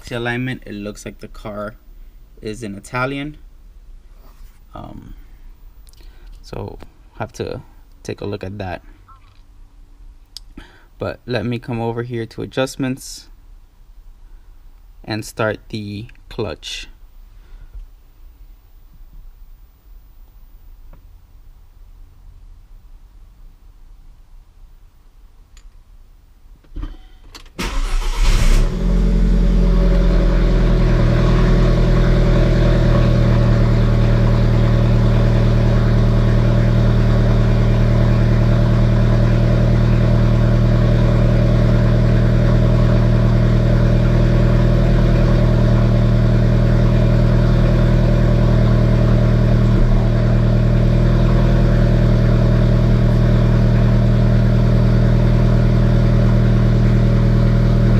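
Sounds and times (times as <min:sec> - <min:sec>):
car engine starting and idling: 0:26.7 - 0:57.9.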